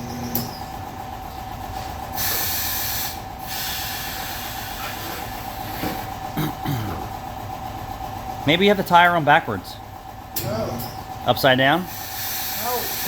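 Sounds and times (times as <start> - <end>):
steady mechanical hum: 0.0 - 13.0
compressed air hissing: 2.2 - 6.1, 11.8 - 13.0.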